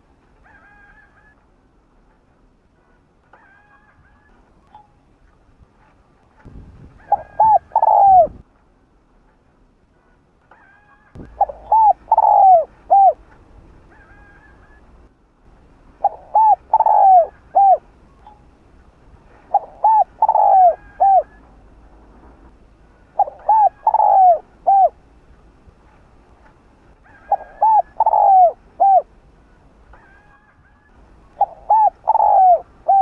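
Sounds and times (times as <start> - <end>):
dove cooing: 7.0 - 8.4, 11.2 - 13.2, 16.0 - 17.9, 19.3 - 21.5, 23.1 - 25.0, 27.0 - 29.1, 31.4 - 33.0.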